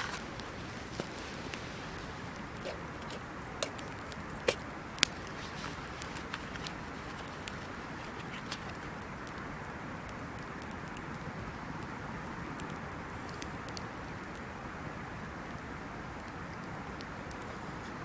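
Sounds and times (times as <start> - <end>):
fire sharp pops: 0.0 - 9.4
wood fire hissing and crackling: 0.0 - 18.0.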